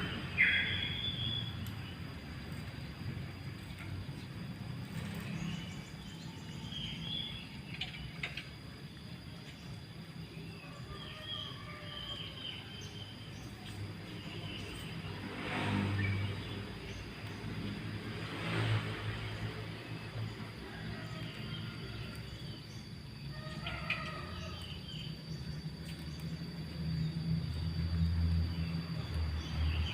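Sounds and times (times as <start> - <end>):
birds chirping: 0.0 - 17.9.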